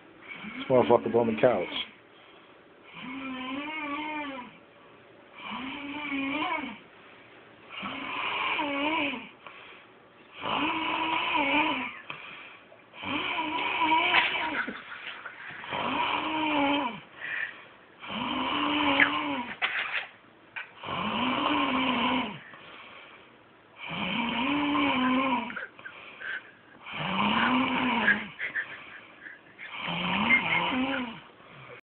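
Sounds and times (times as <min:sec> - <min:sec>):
quiet breaths: 0:00.0 - 0:06.2, 0:06.8 - 0:14.1, 0:15.2 - 0:19.5, 0:20.7 - 0:31.8
man snoring: 0:02.9 - 0:04.6, 0:05.4 - 0:06.8, 0:07.7 - 0:09.4, 0:10.4 - 0:12.2, 0:13.0 - 0:14.6, 0:15.6 - 0:17.1, 0:18.0 - 0:19.5, 0:20.8 - 0:22.6, 0:23.8 - 0:25.9, 0:26.8 - 0:28.8, 0:29.6 - 0:31.8.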